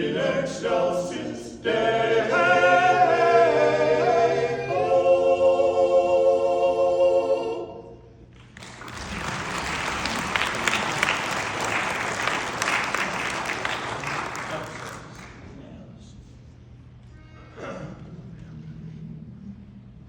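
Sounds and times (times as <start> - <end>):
choir singing: 0.0 - 8.1
audience applauding: 8.4 - 15.5.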